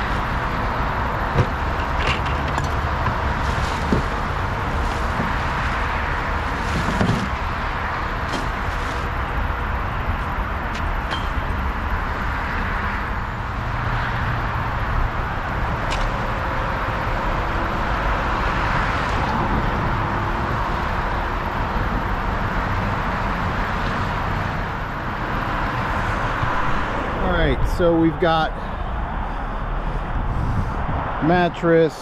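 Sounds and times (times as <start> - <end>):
road vehicle rumble and hiss: 0.0 - 32.0.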